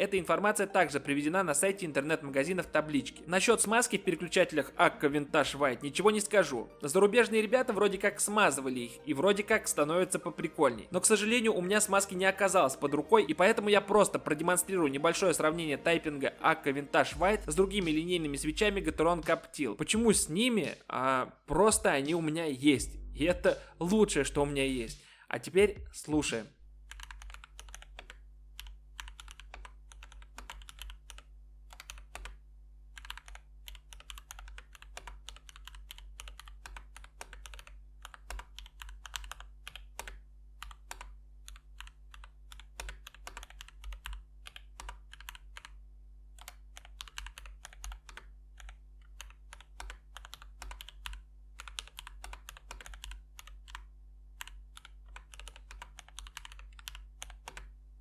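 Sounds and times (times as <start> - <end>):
low hum: 22.8 - 23.6
mechanical keyboard typing: 26.9 - 32.4, 33.0 - 45.8, 46.4 - 57.7.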